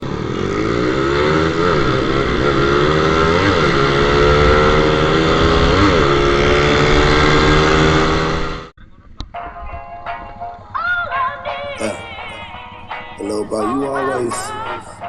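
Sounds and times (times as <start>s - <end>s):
motorcycle engine running: 0.0s - 8.7s.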